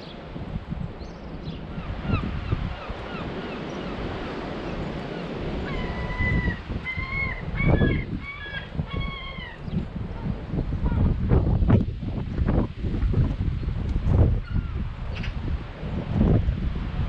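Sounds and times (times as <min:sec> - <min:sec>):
birds chirping: 0:00.9 - 0:10.3.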